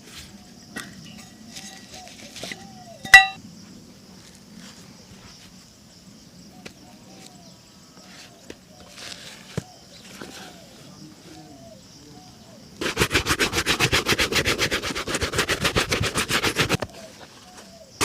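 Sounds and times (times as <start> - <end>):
outdoor background noise: 0.0 - 18.0
sharp metallic clink: 3.1 - 3.4.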